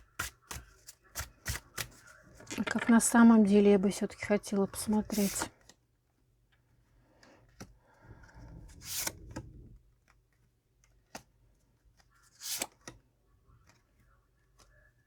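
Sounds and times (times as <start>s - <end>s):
cards rustling: 0.0s - 3.0s, 4.7s - 5.7s, 8.7s - 9.4s, 11.9s - 13.0s
card swish: 8.8s - 9.2s, 12.4s - 12.8s.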